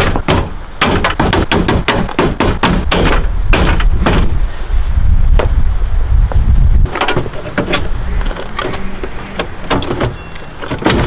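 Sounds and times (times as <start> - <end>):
hammer banging sheet metal: 0.0 - 4.4
wind rumble on microphone: 2.4 - 10.2.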